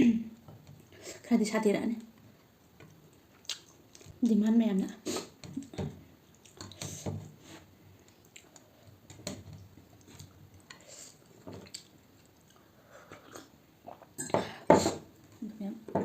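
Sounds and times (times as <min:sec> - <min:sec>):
person chewing food: 0:02.6 - 0:04.2, 0:05.5 - 0:06.9, 0:08.0 - 0:09.0, 0:09.6 - 0:14.2
wet mouth smacks: 0:03.4 - 0:04.0.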